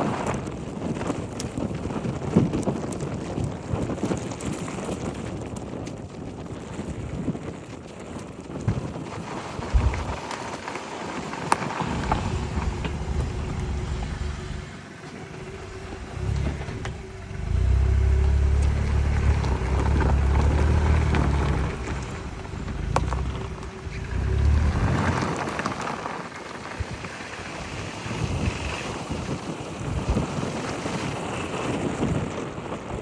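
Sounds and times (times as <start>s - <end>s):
car engine rumble: 8.5s - 33.0s.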